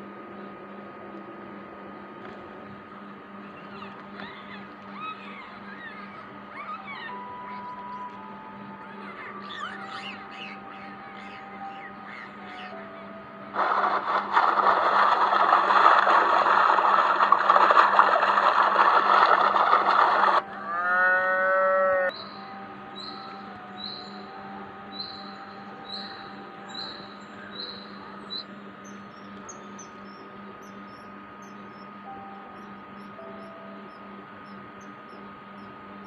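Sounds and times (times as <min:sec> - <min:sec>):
steady hum: 0:00.0 - 0:36.0
faint chirp: 0:02.5 - 0:13.5, 0:21.8 - 0:36.0
cattle mooing: 0:20.5 - 0:22.1.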